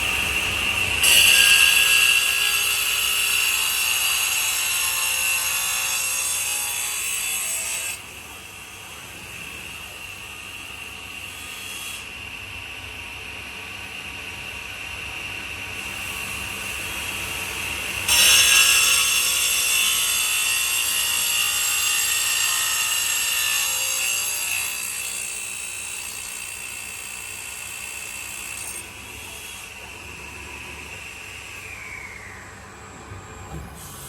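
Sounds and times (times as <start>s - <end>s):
saw cutting into wood: 18.1s - 31.1s.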